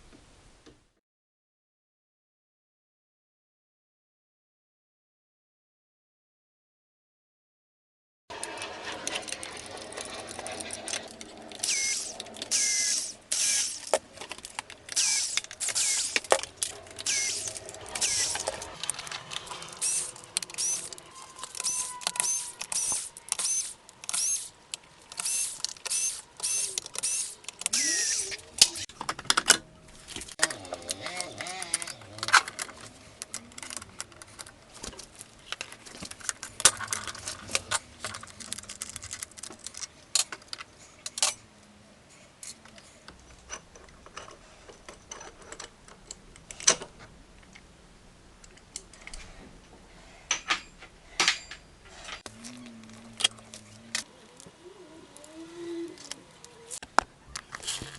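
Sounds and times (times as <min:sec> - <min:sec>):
hand tools clicking and rattling: 0:08.4 - 0:29.6.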